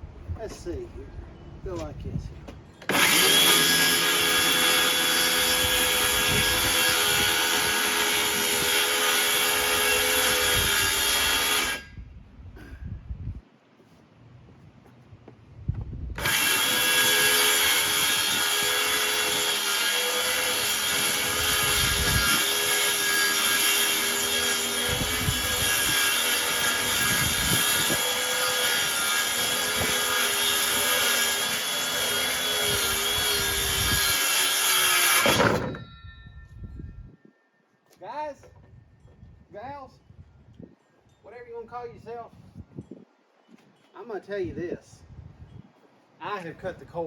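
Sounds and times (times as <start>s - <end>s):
power saw cutting plywood: 2.9s - 11.9s, 16.2s - 35.8s.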